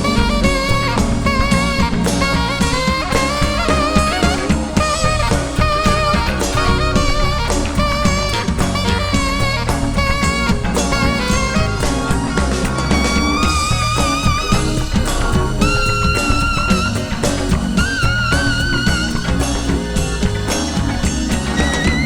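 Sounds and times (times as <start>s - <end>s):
drum kit and bass beat: 0.0s - 22.0s
wavering lead melody: 0.0s - 22.0s.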